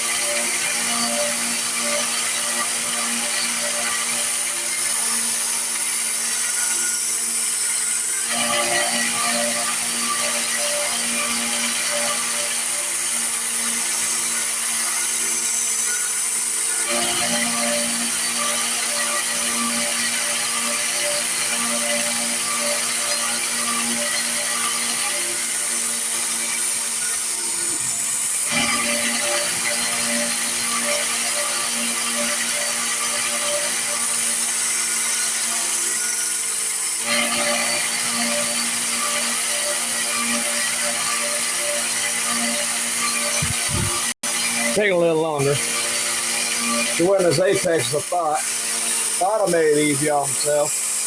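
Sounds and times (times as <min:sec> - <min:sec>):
belt grinder motor hum: 0:00.0 - 0:51.0
electric sander running: 0:00.0 - 0:51.0
knife grinding on abrasive: 0:42.3 - 0:51.0.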